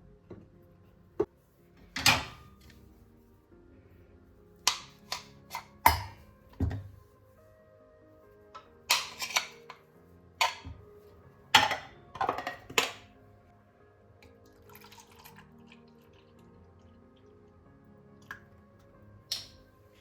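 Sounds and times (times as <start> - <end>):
soft background music: 0.0 - 20.0
kitchen clatters and taps: 2.0 - 2.7, 4.7 - 7.0, 10.4 - 10.8, 11.6 - 13.1.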